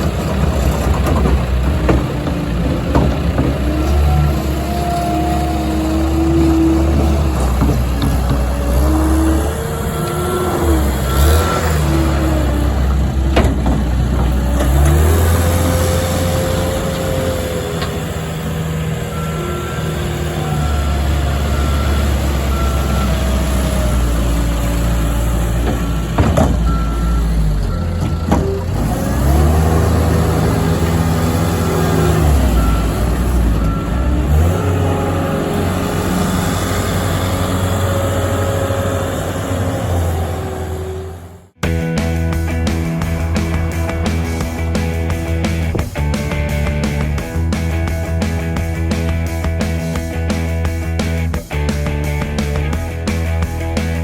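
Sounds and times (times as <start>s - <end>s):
diesel engine under load: 0.0s - 54.0s
backup alarm beeping: 19.1s - 24.0s, 25.8s - 28.8s
sharp knocks: 25.6s - 26.8s.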